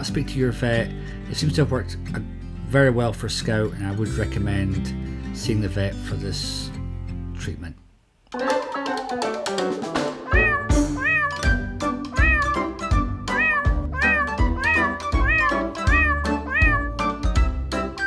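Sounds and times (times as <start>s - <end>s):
meow-like calls: 8.4s - 12.7s, 13.3s - 17.0s
music with steady beat: 8.4s - 18.0s.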